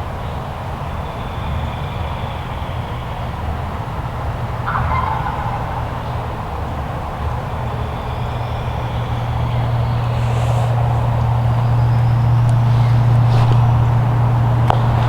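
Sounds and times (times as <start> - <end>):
low engine drone: 4.6 - 15.0.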